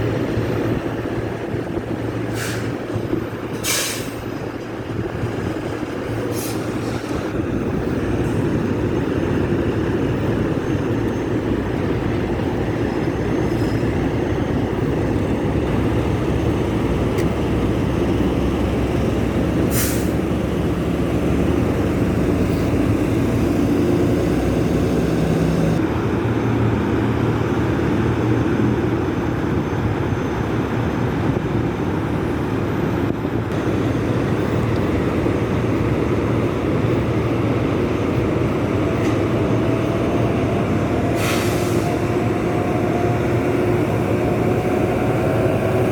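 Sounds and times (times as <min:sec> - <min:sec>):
diesel truck engines running: 0:00.0 - 0:45.9
air brake hiss: 0:02.3 - 0:02.8, 0:03.6 - 0:04.2, 0:06.3 - 0:07.2, 0:19.7 - 0:20.2, 0:41.2 - 0:42.0.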